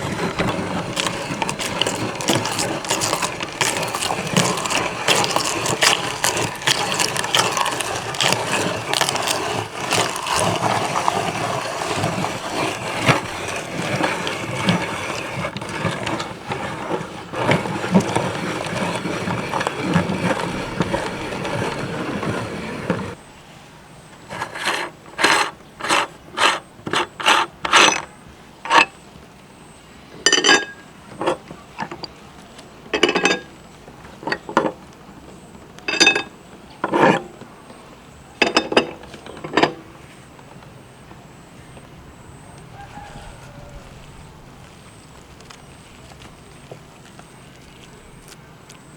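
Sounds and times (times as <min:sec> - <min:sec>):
meat grinder crunching: 0:00.0 - 0:23.2.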